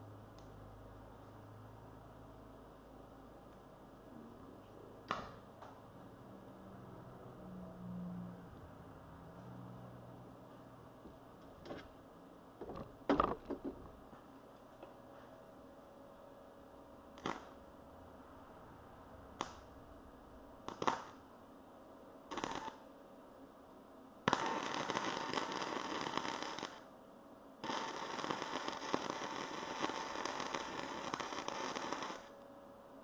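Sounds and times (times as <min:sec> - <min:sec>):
arc welding crackling: 0:17.2 - 0:17.6, 0:20.7 - 0:21.2, 0:22.3 - 0:22.8, 0:24.3 - 0:26.9, 0:27.6 - 0:32.4.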